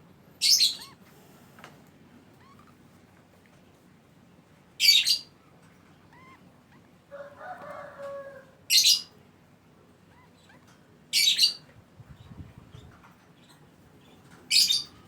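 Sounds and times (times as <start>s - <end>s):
lovebird shrieking: 0.4s - 1.0s
low bird chattering: 0.4s - 1.0s, 4.8s - 6.9s, 10.1s - 15.0s
soft bird chirps: 0.4s - 1.0s, 4.8s - 6.9s, 10.1s - 15.0s.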